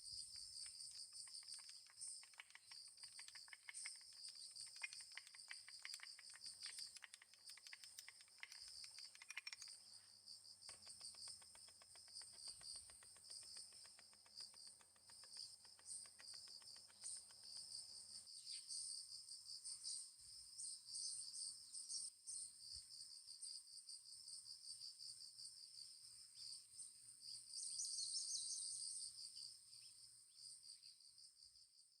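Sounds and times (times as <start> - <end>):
crickets chirring: 0.0 - 31.6
faint rapid ticking: 0.2 - 9.8, 10.7 - 18.0.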